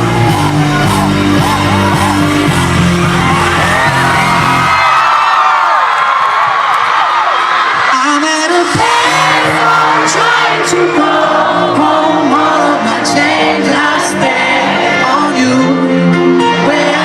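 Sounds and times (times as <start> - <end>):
live pop-rock band: 0.0 - 5.0, 7.8 - 17.0
crowd whooping and shouting: 0.0 - 15.3
person singing lead: 7.9 - 17.0.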